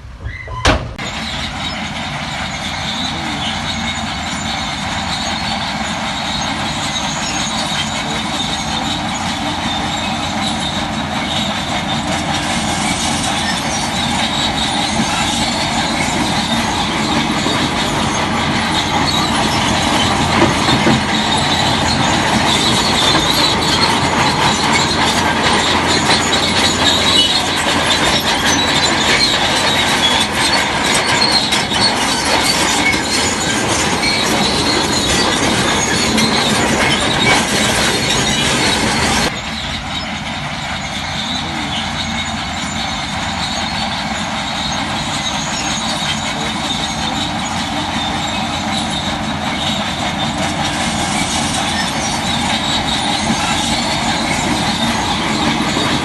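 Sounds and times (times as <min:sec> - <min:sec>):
bulldozer engine: 0:00.0 - 0:56.0
bulldozer tracks clanking and squealing: 0:00.0 - 0:56.0.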